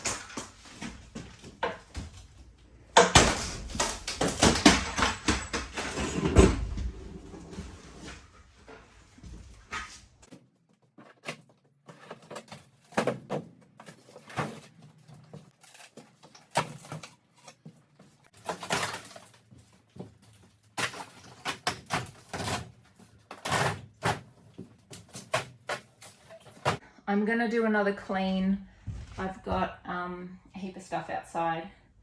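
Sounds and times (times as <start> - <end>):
demolition knocks and bangs: 0.0 - 7.7.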